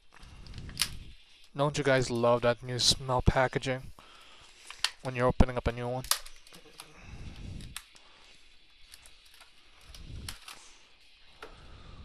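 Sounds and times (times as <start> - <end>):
packaging crackling and clicking: 0.2 - 1.6, 6.0 - 8.1, 8.7 - 10.8.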